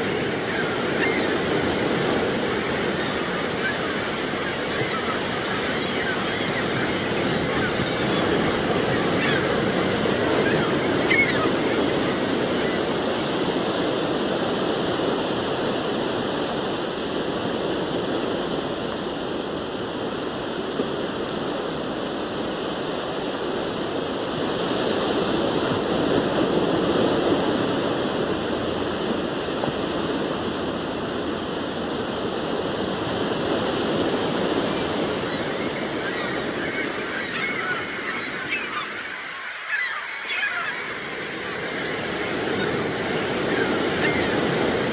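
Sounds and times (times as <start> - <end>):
sea surf on beach: 0.0 - 44.9
faint bird call: 35.3 - 44.5.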